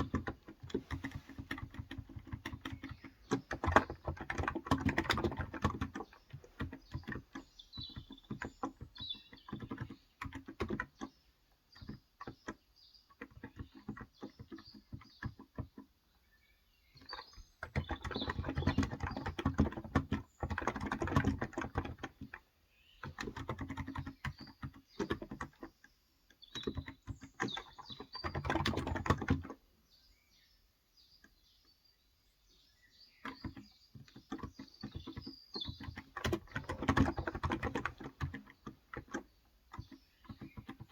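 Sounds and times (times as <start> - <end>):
keyboard typing: 0.0 - 11.1, 17.6 - 22.4, 23.0 - 25.7, 26.5 - 29.6, 33.2 - 40.9
faint birds chirping: 0.0 - 40.9.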